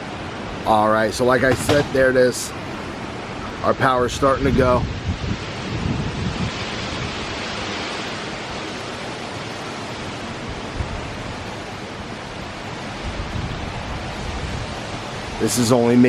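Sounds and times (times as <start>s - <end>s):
heavy rain: 0.0s - 16.0s
wind: 0.0s - 16.0s.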